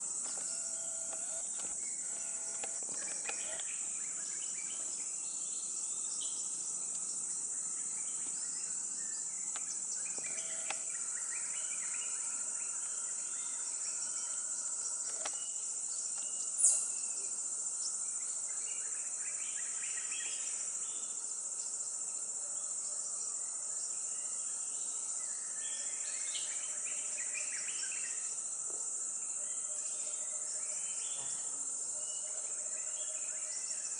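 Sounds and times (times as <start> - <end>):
high-pitched insect chorus: 0.0 - 33.9
faint bird calls: 0.2 - 4.9.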